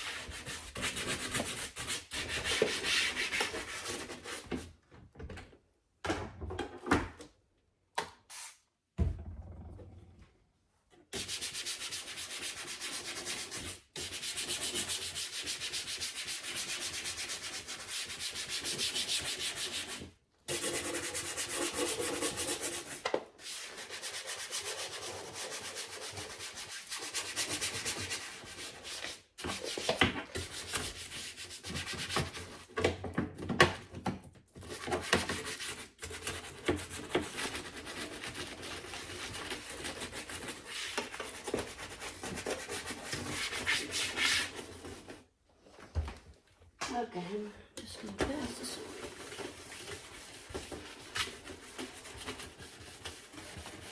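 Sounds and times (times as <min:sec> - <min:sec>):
brush scrubbing a panel: 0:11.2 - 0:32.7, 0:34.7 - 0:45.2, 0:48.4 - 0:53.9.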